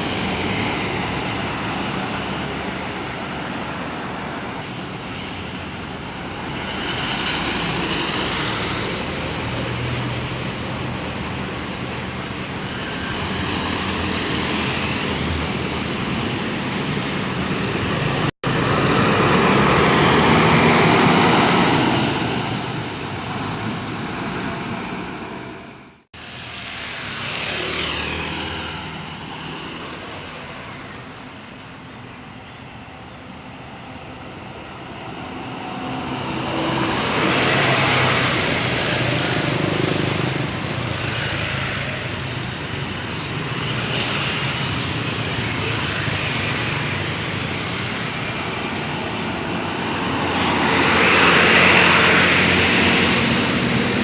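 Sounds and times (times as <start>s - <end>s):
diesel buses pulling away: 0.0s - 26.4s, 30.8s - 54.0s
road traffic noise: 0.0s - 54.0s.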